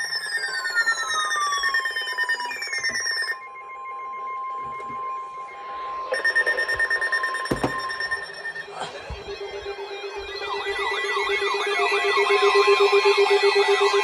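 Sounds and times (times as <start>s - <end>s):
steady single alarm tone: 0.0s - 9.3s
falling sweeping alarm tones: 0.0s - 13.9s
short knock: 7.5s - 8.0s.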